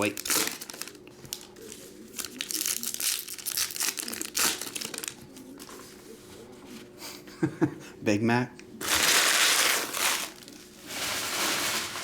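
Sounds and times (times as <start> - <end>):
wrappers crinkling and tearing: 0.0 - 5.8, 8.8 - 12.0.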